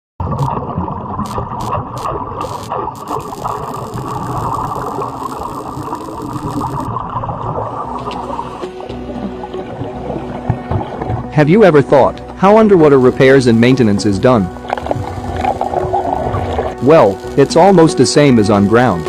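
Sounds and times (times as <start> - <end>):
rumbling bubbling noise: 0.2 - 8.6
underwater welding arc crackling: 0.2 - 11.3, 12.1 - 19.0
sharp clicks: 1.2 - 6.9.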